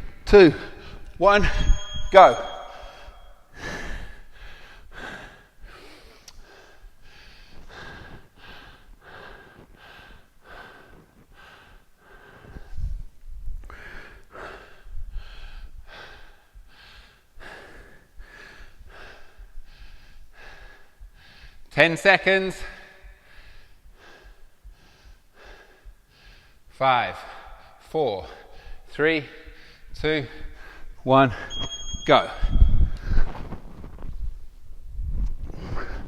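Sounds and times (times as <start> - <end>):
man breathing heavily: 0.0 - 21.8, 22.5 - 31.5, 35.5 - 36.0
faint high tone: 1.4 - 3.4.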